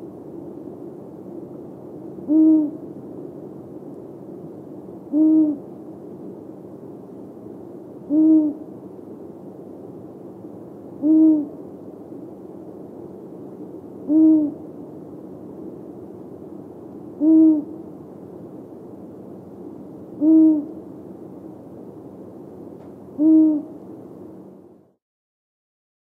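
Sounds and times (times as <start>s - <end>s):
owl hooting: 2.2s - 2.8s, 5.1s - 5.6s, 8.0s - 8.7s, 11.0s - 11.6s, 14.0s - 14.6s, 17.2s - 17.8s, 20.2s - 20.8s, 23.2s - 23.8s.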